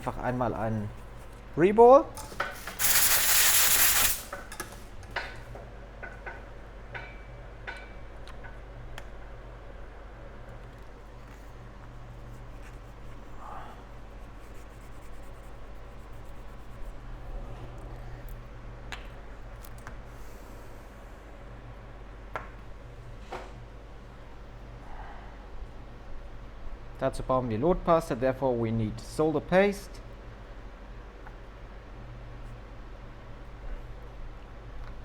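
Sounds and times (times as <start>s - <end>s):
low electrical hum: 0.0s - 35.0s
loud hiss: 2.4s - 4.8s.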